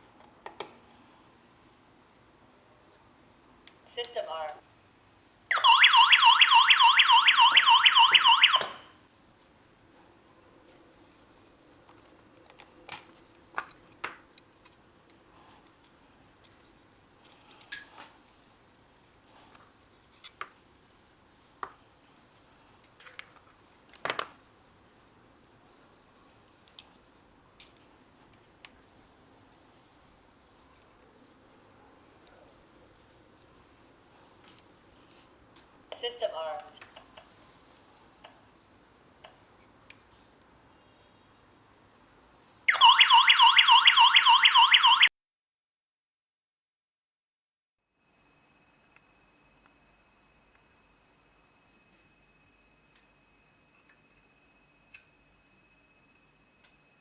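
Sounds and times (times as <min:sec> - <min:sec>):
burglar alarm siren warbling: 0:05.5 - 0:08.8, 0:42.7 - 0:45.1.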